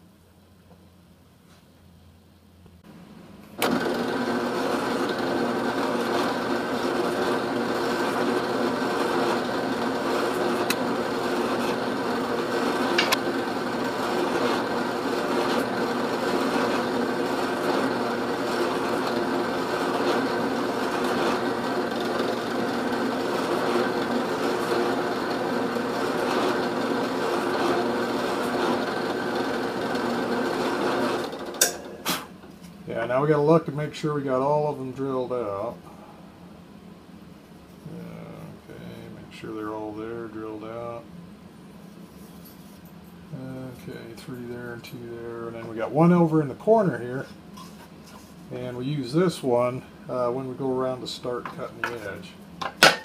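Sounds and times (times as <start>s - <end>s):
drill press motor humming: 3.5s - 32.5s.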